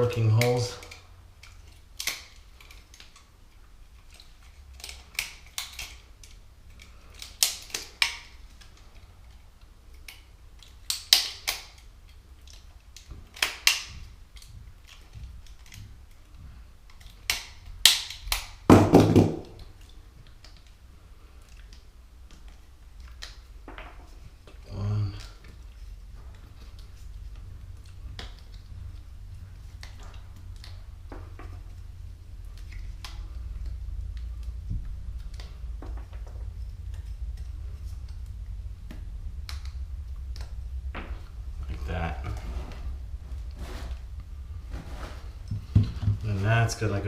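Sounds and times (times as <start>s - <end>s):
plastic clicking and snapping: 0.8s - 3.3s.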